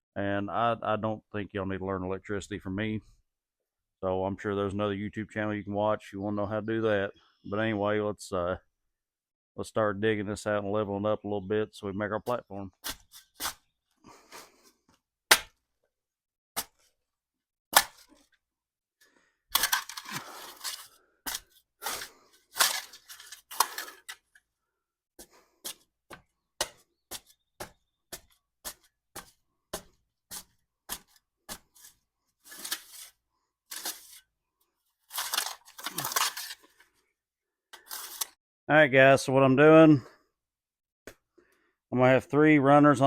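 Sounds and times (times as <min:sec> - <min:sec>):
shovel striking dirt: 0:12.8 - 0:13.7, 0:15.3 - 0:15.6, 0:17.7 - 0:18.2, 0:19.5 - 0:24.1, 0:25.7 - 0:33.1
shovel scraping soil: 0:12.8 - 0:14.6, 0:19.5 - 0:24.3, 0:26.7 - 0:34.3, 0:35.0 - 0:36.8, 0:37.8 - 0:38.4.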